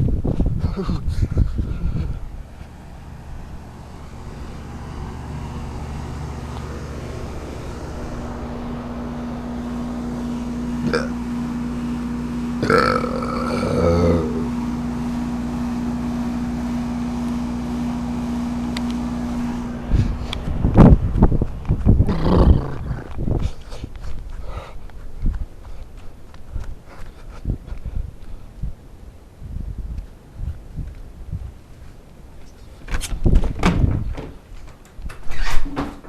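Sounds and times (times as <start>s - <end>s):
heat pump humming: 0.0s - 29.4s.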